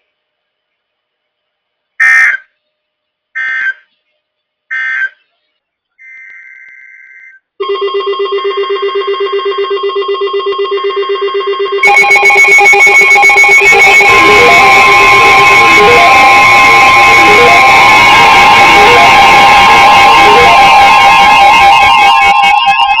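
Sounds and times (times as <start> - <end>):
electronic alarm pulsing rapidly: 3.4 - 3.8, 4.7 - 5.2, 7.6 - 23.0
buzzy receiver alarm: 7.6 - 23.0
data tone bursts: 8.8 - 23.0.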